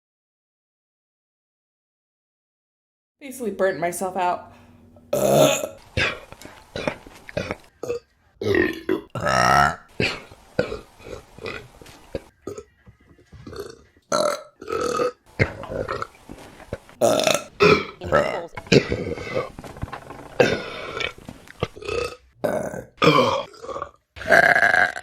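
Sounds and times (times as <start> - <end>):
women burping: 5.1 - 12.7, 17.0 - 19.5, 20.4 - 25.0.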